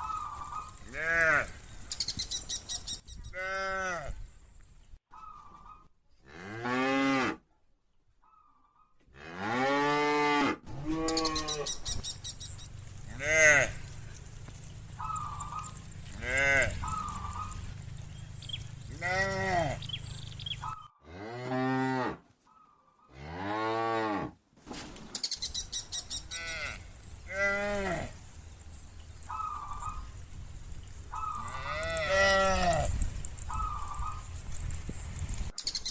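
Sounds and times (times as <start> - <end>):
cows mooing: 0.3 - 1.7, 12.6 - 22.2, 26.2 - 30.2, 31.2 - 34.3.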